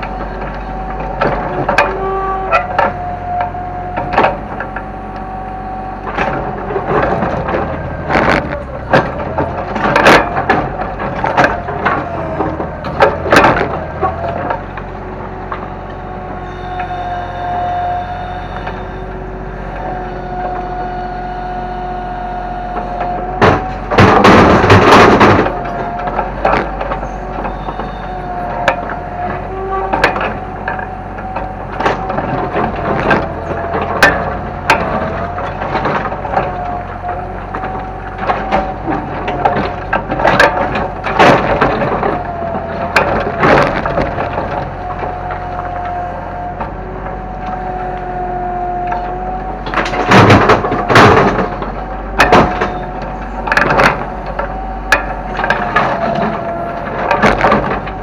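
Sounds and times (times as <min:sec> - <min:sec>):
wood cracking and knocking: 0:00.0 - 0:17.9, 0:22.4 - 0:58.0
excavator engine whine: 0:00.0 - 0:58.0
loud crash of debris: 0:23.0 - 0:46.0.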